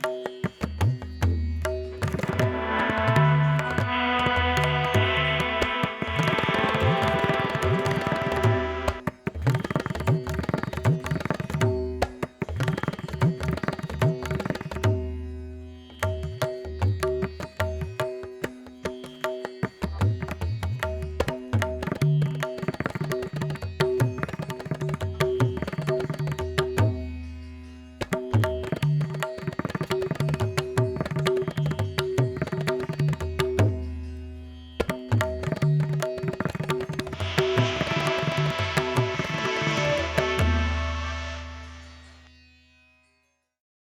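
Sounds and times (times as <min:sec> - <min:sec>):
held drone: 0:02.4 - 0:09.0, 0:37.2 - 0:42.2
fast hand drum strokes: 0:34.9 - 0:41.8.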